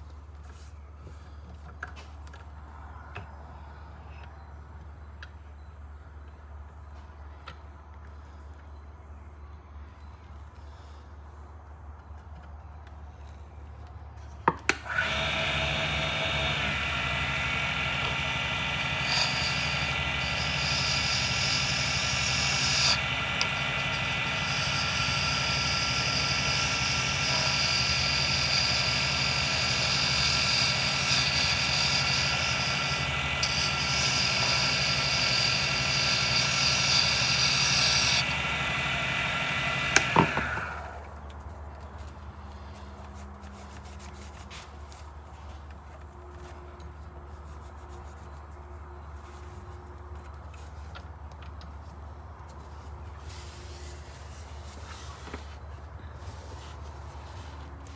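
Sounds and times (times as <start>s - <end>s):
lathe motor whine: 14.7s - 41.2s
hiss of tool on spinning blank: 14.8s - 41.0s
lathe switch click: 39.4s - 40.9s.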